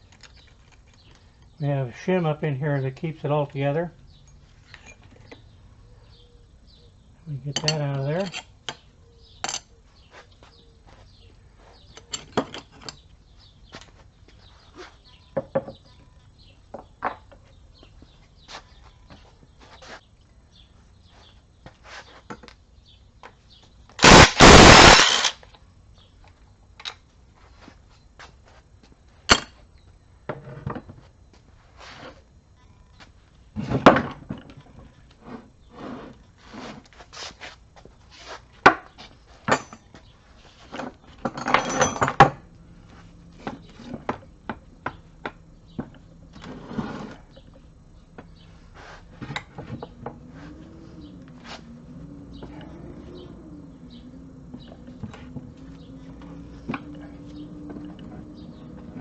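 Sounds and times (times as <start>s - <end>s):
clinks and knocks of metal tools: 4.2s - 5.4s, 7.5s - 9.7s, 11.9s - 13.2s, 39.4s - 40.0s, 40.7s - 42.4s
rapid rattling burst: 24.0s - 25.4s.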